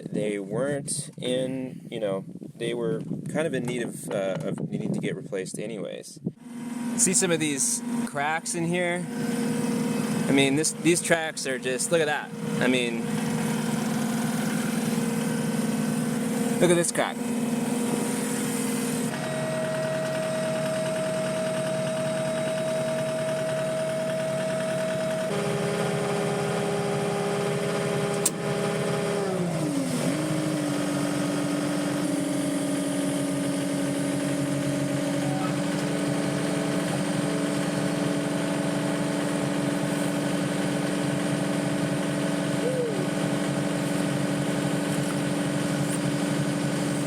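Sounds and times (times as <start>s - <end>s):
loader engine running: 6.3s - 47.0s
sharp click: 28.1s - 28.4s.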